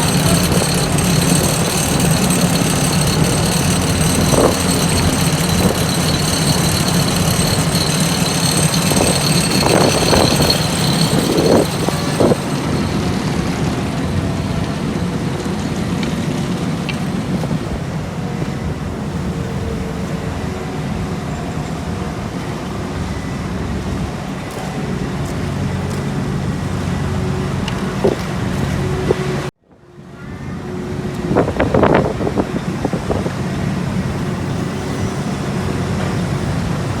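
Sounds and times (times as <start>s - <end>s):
high whine: 0.0s - 16.5s
diesel paving machinery running: 0.0s - 37.0s.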